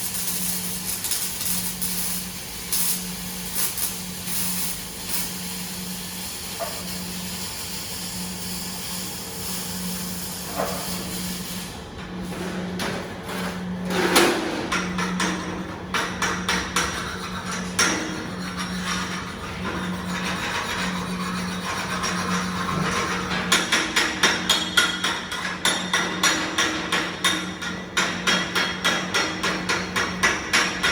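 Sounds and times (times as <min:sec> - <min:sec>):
welding arc hissing: 0:00.0 - 0:11.8
sharp metallic knocks and clicks: 0:22.8 - 0:30.9.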